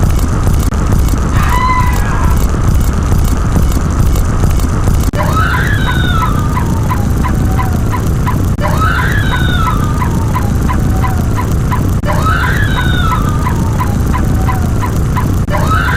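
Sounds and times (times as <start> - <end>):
loud low rumble: 0.0 - 15.9
bird gobbling call: 5.2 - 15.9.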